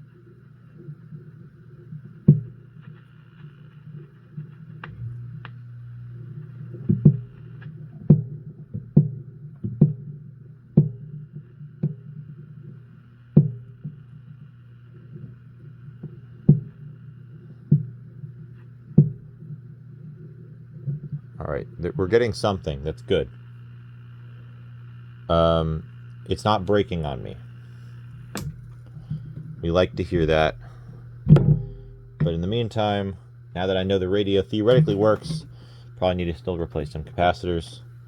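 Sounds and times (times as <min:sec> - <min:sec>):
radio speaker low hum: 0:00.0 - 0:38.0
sharp crackling pops: 0:00.7 - 0:08.2, 0:26.0 - 0:38.0.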